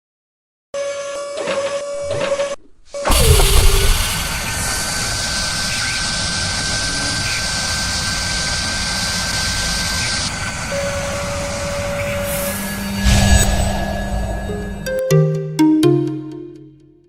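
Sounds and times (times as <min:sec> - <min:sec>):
high hiss: 0:03.0 - 0:14.9.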